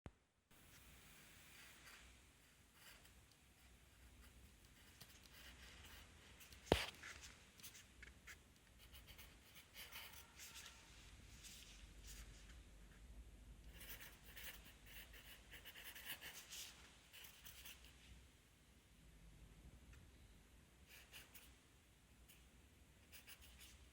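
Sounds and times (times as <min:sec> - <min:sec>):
pencil scratching on paper: 0:01.5 - 0:12.4, 0:13.7 - 0:18.0, 0:20.9 - 0:21.6, 0:23.0 - 0:23.9.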